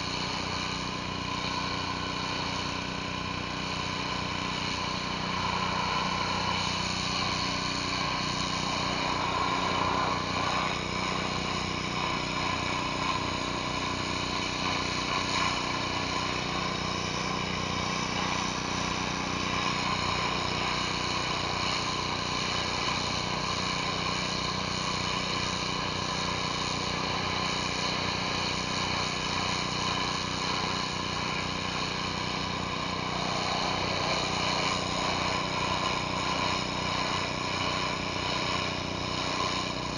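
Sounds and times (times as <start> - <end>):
high-pressure water spray hissing: 0.0 - 39.9
pressure washer engine running: 0.0 - 39.9.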